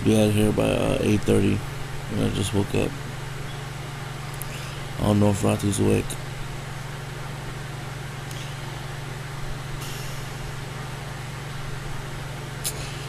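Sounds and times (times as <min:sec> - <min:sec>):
steady low hum: 0:00.0 - 0:13.0
background hiss: 0:08.1 - 0:13.0.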